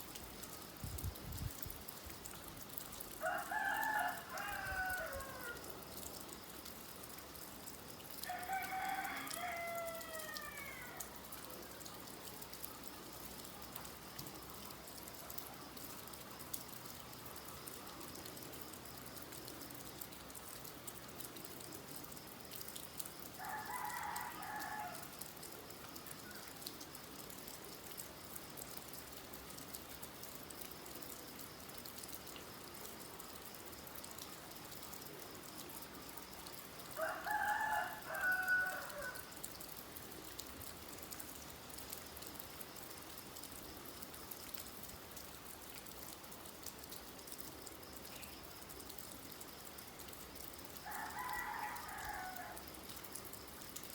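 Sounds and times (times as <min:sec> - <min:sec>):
light rain with drips: 0:00.0 - 0:53.9
rooster crowing: 0:03.2 - 0:05.7, 0:08.2 - 0:11.1, 0:23.4 - 0:25.2, 0:37.0 - 0:39.3, 0:50.8 - 0:52.6.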